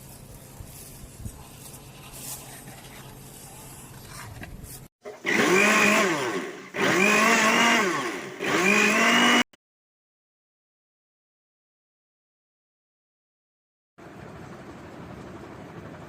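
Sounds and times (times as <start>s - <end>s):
blender motor whirring: 5.0s - 9.5s.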